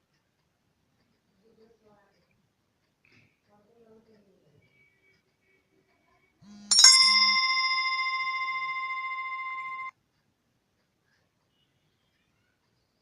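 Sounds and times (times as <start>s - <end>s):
bell-like chime: 6.7s - 9.9s.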